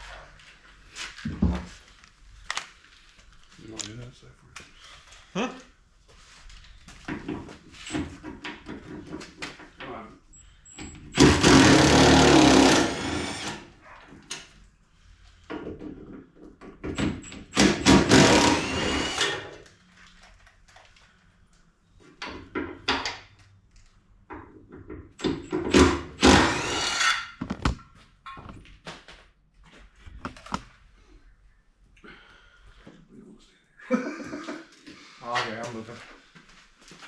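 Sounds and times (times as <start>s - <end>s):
power tool running: 11.2s - 13.7s, 17.6s - 19.5s, 25.8s - 27.2s.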